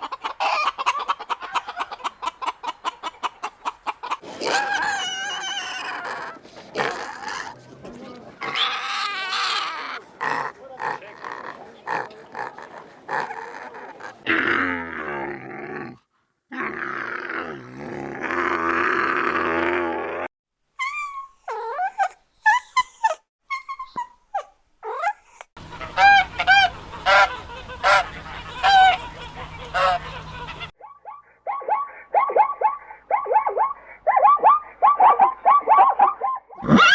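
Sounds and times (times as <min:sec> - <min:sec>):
waterfowl honking and calling: 0:04.3 - 0:14.2, 0:25.6 - 0:30.7.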